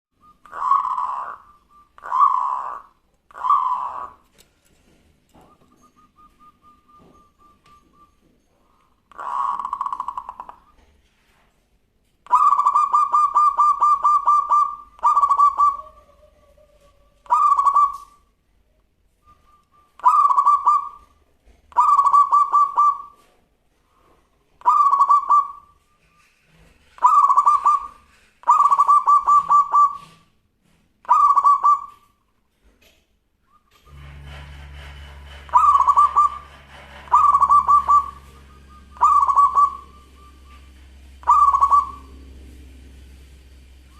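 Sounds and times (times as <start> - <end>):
dove purring coos: 0.3 - 4.2, 9.1 - 10.8, 12.3 - 18.1, 27.0 - 30.2, 35.5 - 43.9.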